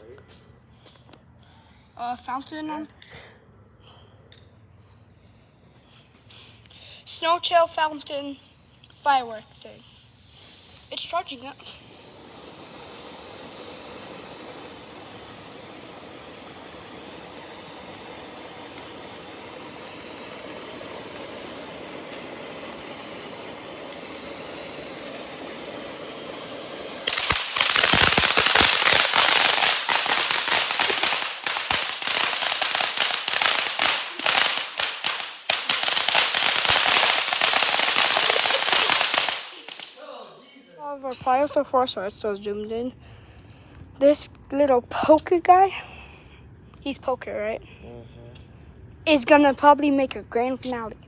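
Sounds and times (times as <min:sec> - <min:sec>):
firework fountain hissing: 0:05.3 - 0:40.2
firework crackling: 0:05.7 - 0:40.2.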